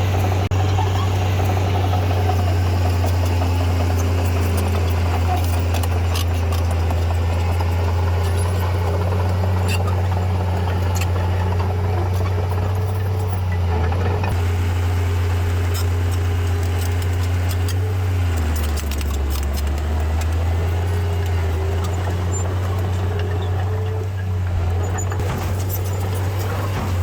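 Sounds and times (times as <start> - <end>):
heavy diesel engine droning: 0.0 - 27.0
metallic clanks and rattles: 13.8 - 27.0.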